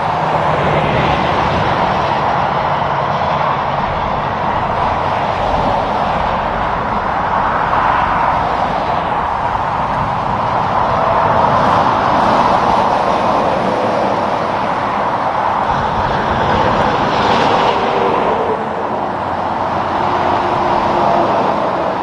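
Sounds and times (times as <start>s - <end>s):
faint engine drone: 0.0s - 22.0s
highway traffic passing: 0.0s - 22.0s.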